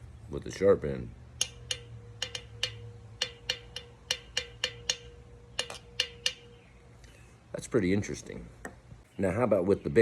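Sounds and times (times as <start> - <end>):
pencil tapping on a metal can: 1.4 - 6.5.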